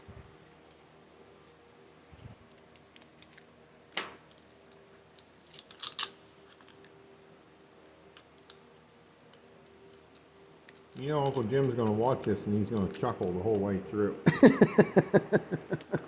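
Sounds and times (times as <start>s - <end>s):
small metal parts clicking and clinking: 2.5s - 7.0s, 8.2s - 11.4s, 12.8s - 13.3s.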